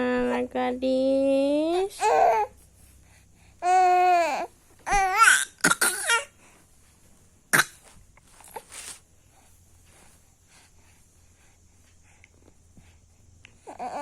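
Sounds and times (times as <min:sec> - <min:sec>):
baby babbling: 0:02.0 - 0:02.5, 0:03.6 - 0:06.3, 0:13.6 - 0:14.0
baby pretend coughing: 0:05.2 - 0:06.3, 0:07.5 - 0:07.8.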